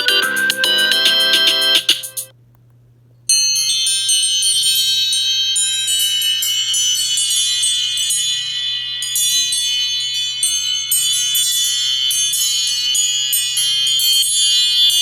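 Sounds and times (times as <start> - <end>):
chiming phone ringtone melody: 0.0 - 2.3.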